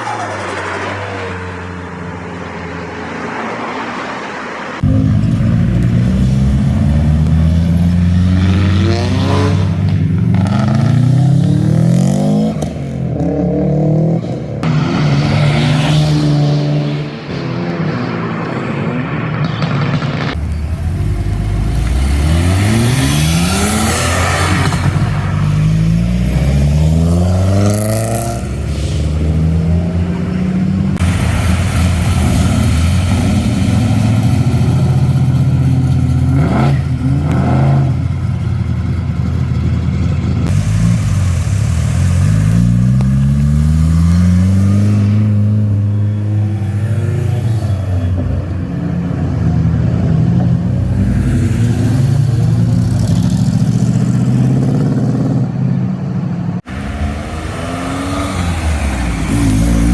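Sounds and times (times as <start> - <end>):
car engines revving: 0.0 - 59.9
steady engine drone: 20.3 - 24.0.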